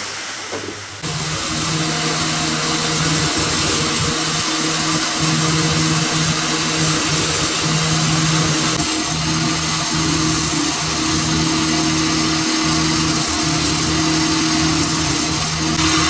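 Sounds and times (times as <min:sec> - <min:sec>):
loud high hiss: 0:00.0 - 0:16.0
workshop machine motor hum: 0:00.5 - 0:16.0.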